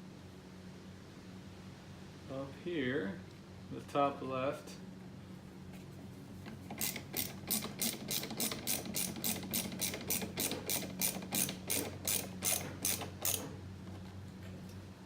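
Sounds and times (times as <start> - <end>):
ratcheting driver clicking: 6.5 - 13.6.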